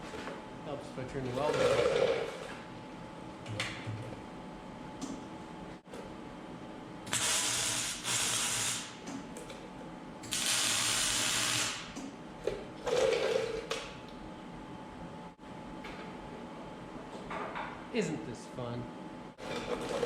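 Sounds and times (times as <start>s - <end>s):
arc welder hissing and crackling: 7.1s - 9.0s, 10.3s - 12.0s.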